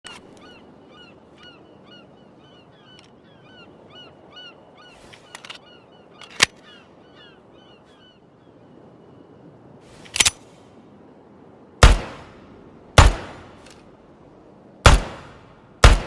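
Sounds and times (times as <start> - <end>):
pistol shot: 11.8 - 12.3, 13.0 - 13.4, 14.9 - 16.0.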